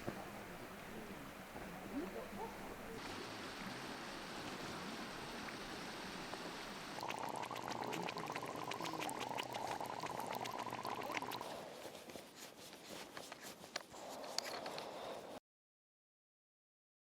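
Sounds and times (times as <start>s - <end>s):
bubbling water: 0.0s - 11.5s
crackle of bursting bubbles: 5.3s - 11.5s.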